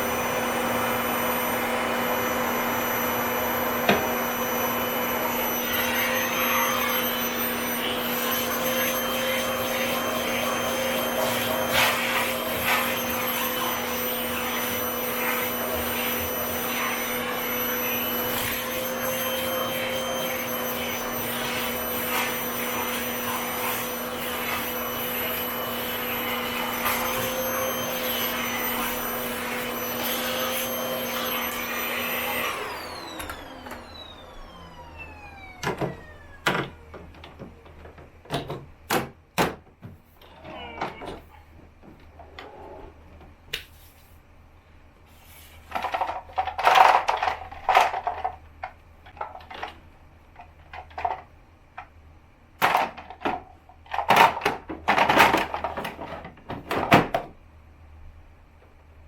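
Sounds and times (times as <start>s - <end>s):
vacuum cleaner running: 0.0s - 38.7s.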